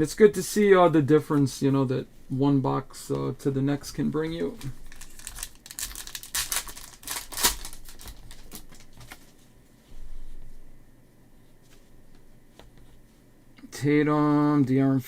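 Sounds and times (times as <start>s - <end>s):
foil pack rustling: 4.3s - 9.5s.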